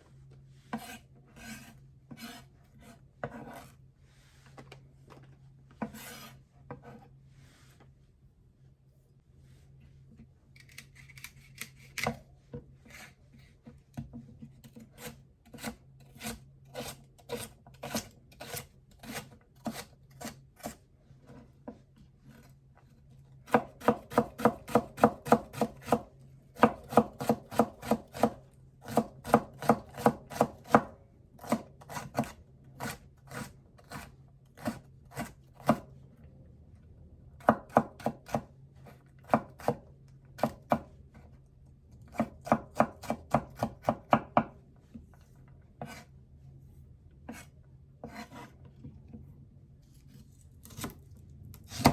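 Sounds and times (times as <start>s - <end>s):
knife chopping on cutting board: 23.5s - 35.9s, 37.4s - 38.5s, 39.2s - 39.8s, 40.4s - 40.9s, 42.1s - 44.6s, 45.8s - 46.1s, 47.3s - 48.5s, 51.7s - 51.9s.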